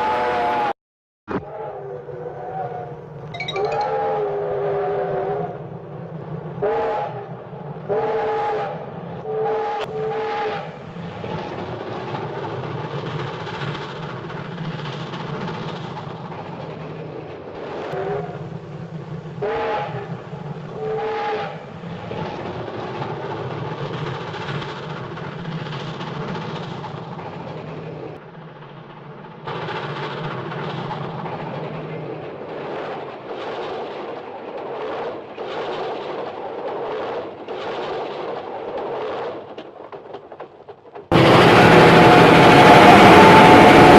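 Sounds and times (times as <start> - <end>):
steam whistle blasts: 0.0 - 0.7
steam train running: 4.3 - 43.9.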